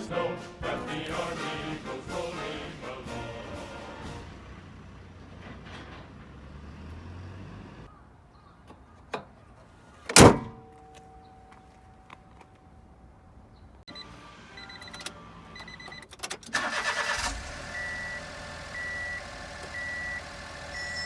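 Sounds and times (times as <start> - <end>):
car door slamming: 10.1 - 10.7.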